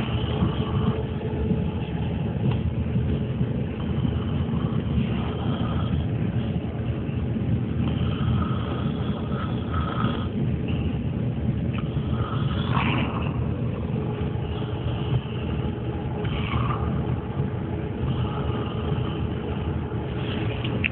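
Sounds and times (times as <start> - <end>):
steady low rumble: 0.0 - 20.9
man snoring loudly: 11.9 - 13.4.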